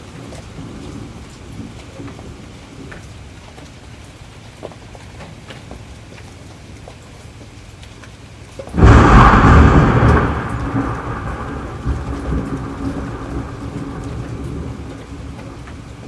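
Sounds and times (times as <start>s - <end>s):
steady rain: 0.0s - 16.0s
thunderclap rumbling: 8.7s - 16.0s.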